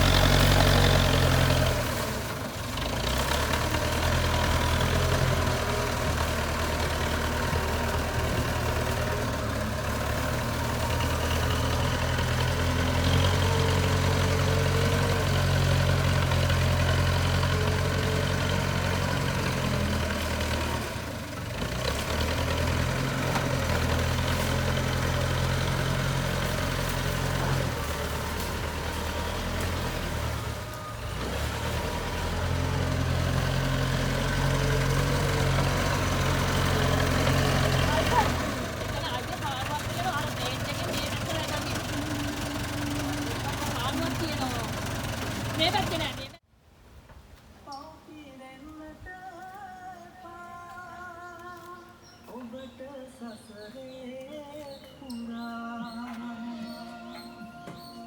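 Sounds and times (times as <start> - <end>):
diesel engine running: 0.0 - 46.4.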